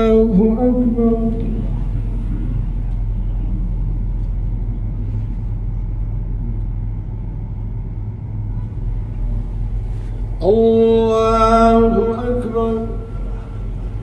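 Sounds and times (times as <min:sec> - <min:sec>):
low hum and rumble: 0:00.0 - 0:14.0.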